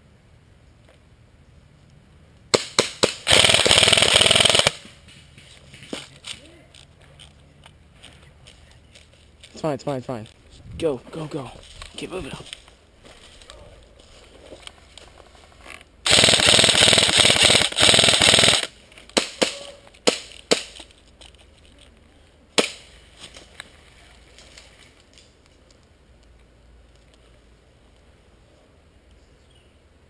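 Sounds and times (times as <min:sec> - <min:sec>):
airsoft rifle full-auto burst: 0:02.6 - 0:04.8, 0:16.0 - 0:18.7.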